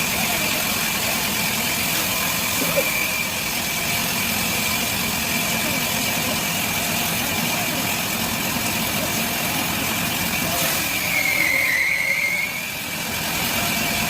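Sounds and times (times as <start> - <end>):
saw high whine: 10.7 - 12.9.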